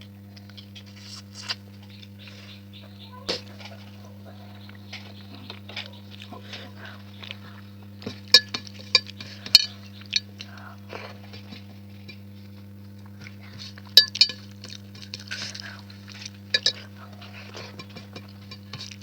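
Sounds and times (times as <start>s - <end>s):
steady low hum: 0.0s - 19.0s
cutlery and dishes clinking: 14.0s - 19.0s.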